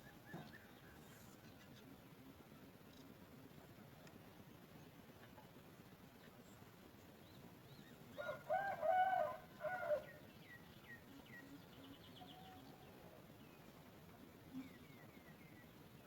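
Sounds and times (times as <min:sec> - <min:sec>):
small birds chirping: 0:00.0 - 0:08.4, 0:09.6 - 0:16.0
rooster crowing: 0:08.2 - 0:10.2.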